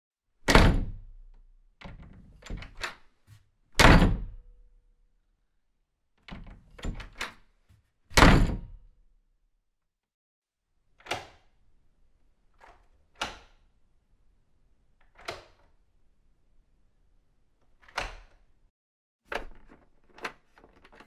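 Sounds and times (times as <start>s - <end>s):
door handle and latch rattling: 1.8s - 3.0s, 6.2s - 7.4s, 19.3s - 21.0s
door shutting hard: 3.8s - 4.3s, 8.1s - 8.6s.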